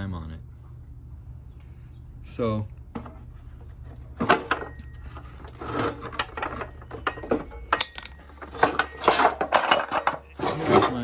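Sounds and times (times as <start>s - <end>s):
hard parts clicking and scraping: 2.9s - 11.0s.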